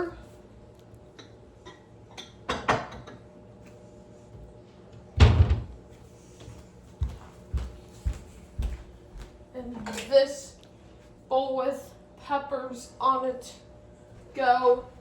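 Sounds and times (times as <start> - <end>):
cabinet door shutting: 5.2 - 5.7.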